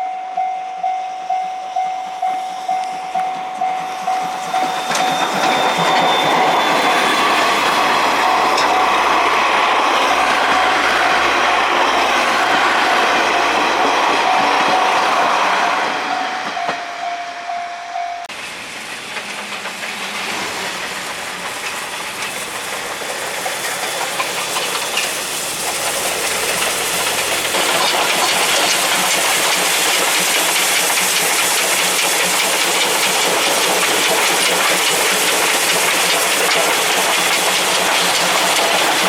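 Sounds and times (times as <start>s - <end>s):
steady tone: 0.0s - 18.3s
steam hiss: 2.3s - 15.8s, 18.3s - 39.0s
wheels clattering on rails: 2.9s - 16.9s, 18.3s - 39.0s.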